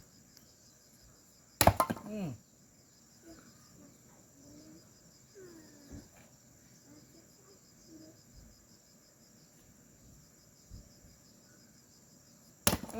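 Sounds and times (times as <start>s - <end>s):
axe chopping log: 1.6s - 2.3s, 12.7s - 12.9s.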